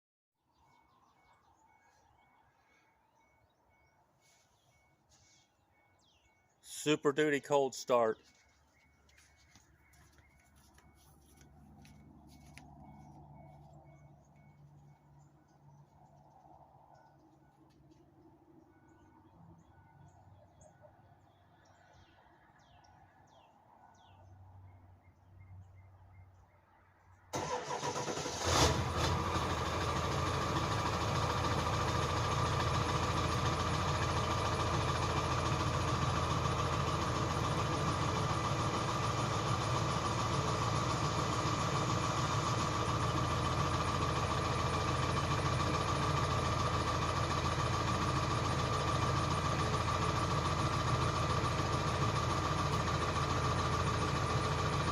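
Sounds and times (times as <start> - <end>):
diesel engine cranking and idling: 9.2 - 20.9, 27.3 - 54.9.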